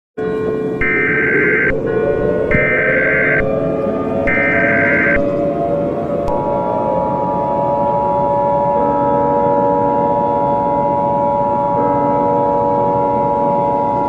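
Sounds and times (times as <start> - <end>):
low background drone: 0.2 - 14.0
two-tone alert beep: 0.8 - 1.8, 2.5 - 3.5, 4.3 - 5.3.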